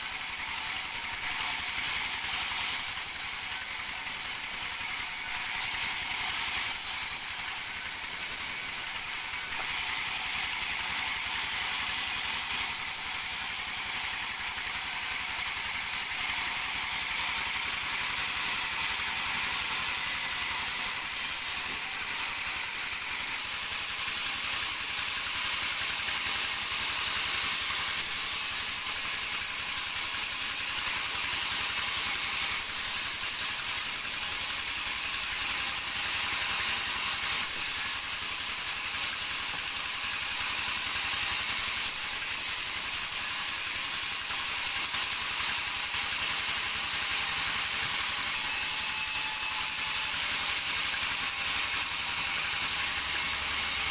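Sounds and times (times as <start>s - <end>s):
sawmill machinery running: 0.0s - 53.9s.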